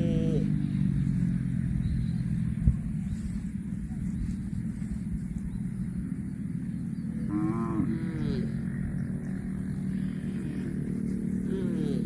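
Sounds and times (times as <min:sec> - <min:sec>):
cow mooing: 0:00.0 - 0:00.6, 0:07.2 - 0:08.7, 0:10.3 - 0:12.0
steady low drone: 0:00.0 - 0:12.0.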